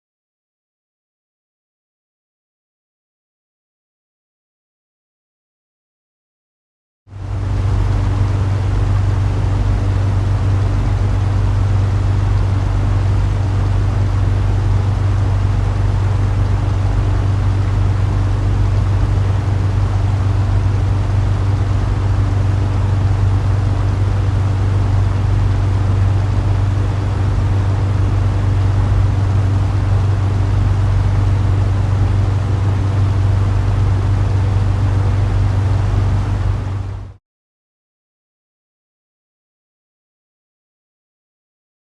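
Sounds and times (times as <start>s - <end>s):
propeller airplane engine droning: 7.1s - 37.2s.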